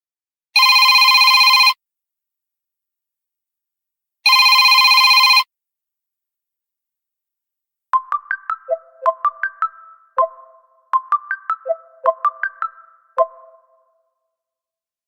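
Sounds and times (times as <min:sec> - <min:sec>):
smartphone ringtone trilling: 0:04.3 - 0:05.5, 0:08.0 - 0:14.0.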